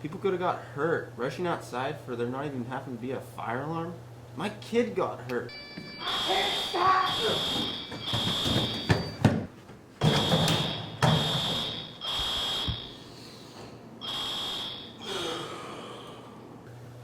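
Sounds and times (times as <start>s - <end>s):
fire alarm horn pulses: 5.5s - 9.3s, 10.0s - 13.1s, 14.0s - 15.0s.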